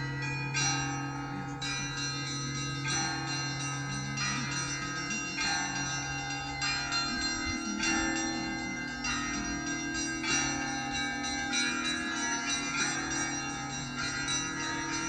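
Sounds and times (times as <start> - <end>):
higher church bells struck: 0.0 - 15.0
hum of larger bells: 0.0 - 15.0.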